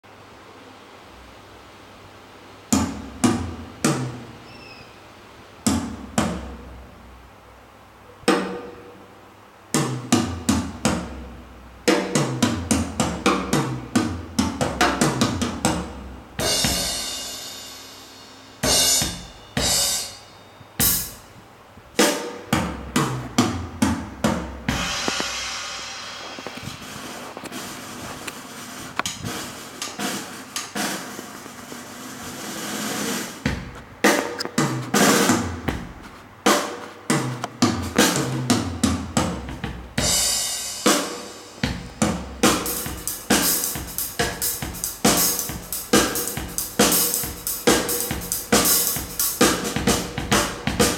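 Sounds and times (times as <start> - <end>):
drum hits and fills: 2.7 - 4.2, 5.7 - 6.7, 8.3 - 8.9, 9.8 - 11.3, 11.9 - 20.2, 20.8 - 21.4, 22.0 - 50.9
cymbals washing: 16.4 - 21.4, 24.7 - 38.5, 40.0 - 50.9.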